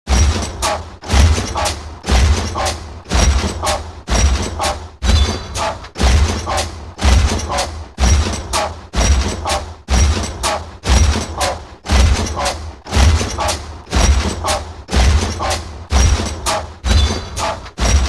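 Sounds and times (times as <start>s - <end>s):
heavy metallic footstep thuds: 0.1s - 18.0s
mechanical clank with whirring: 0.1s - 18.0s.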